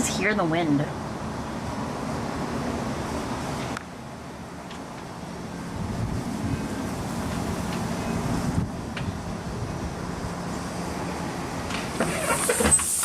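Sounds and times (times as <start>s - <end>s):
wind blowing in a snowstorm: 5.6s - 11.5s.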